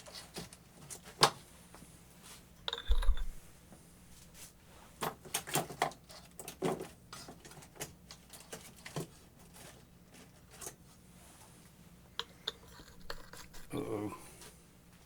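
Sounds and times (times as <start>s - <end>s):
clicks and knocks of metal parts: 5.0s - 9.1s.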